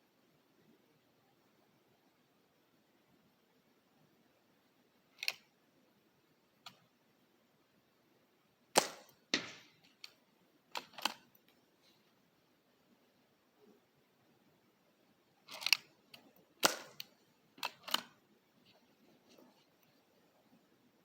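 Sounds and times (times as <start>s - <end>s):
air rifle shots: 8.8s - 9.8s, 16.6s - 17.1s.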